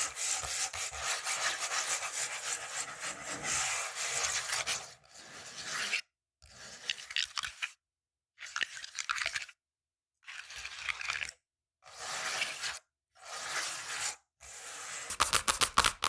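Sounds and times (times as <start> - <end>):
fingernails scratching textured surface: 15.1 - 16.0.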